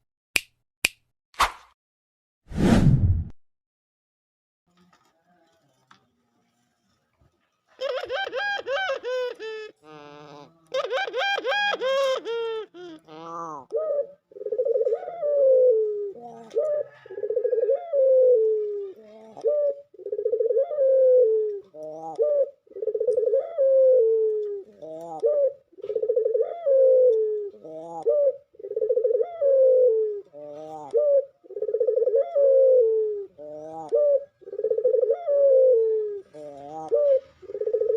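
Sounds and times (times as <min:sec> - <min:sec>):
dove laughing call: 0:07.8 - 0:37.9.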